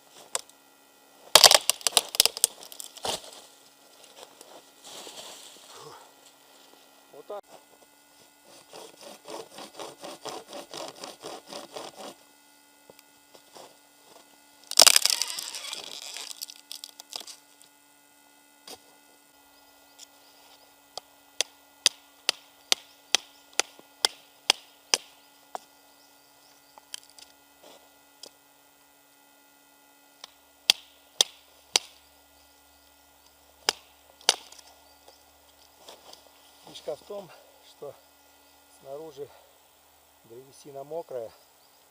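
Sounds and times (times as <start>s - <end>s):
wood cracking and splintering: 1.4s - 3.1s, 14.7s - 17.3s
hand saw cutting wood: 8.4s - 12.3s.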